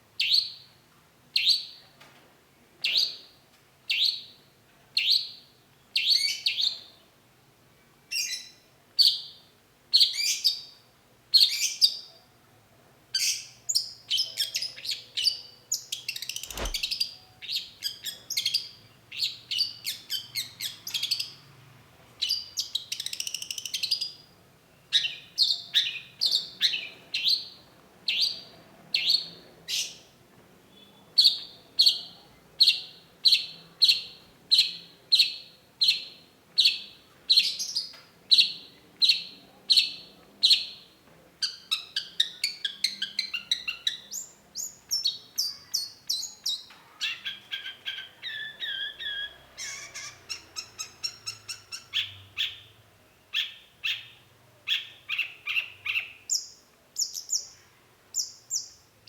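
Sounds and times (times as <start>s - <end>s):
sharp click: 16.3s - 17.0s.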